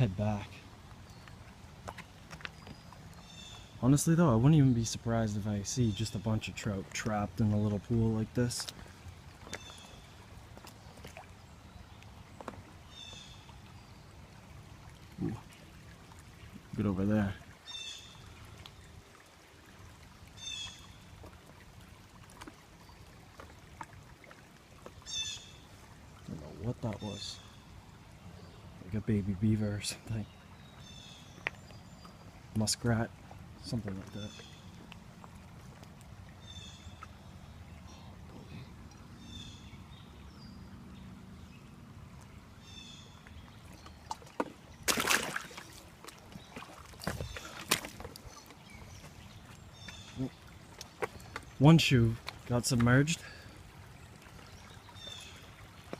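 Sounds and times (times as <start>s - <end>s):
creek water trickling: 0.0s - 55.9s
small water splashes: 0.0s - 55.9s
loud water splash: 44.4s - 45.8s.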